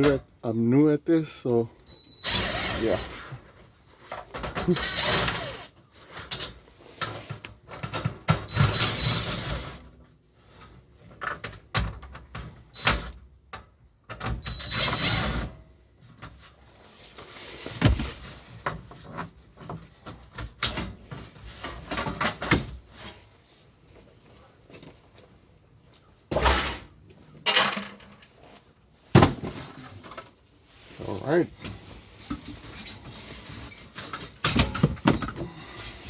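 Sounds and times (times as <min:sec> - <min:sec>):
metal parts clanking: 0:27.4 - 0:28.2.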